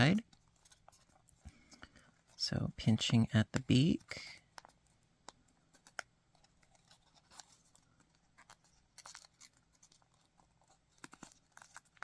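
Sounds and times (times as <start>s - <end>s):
paper rustling and crinkling: 0.0s - 2.5s, 5.6s - 12.0s.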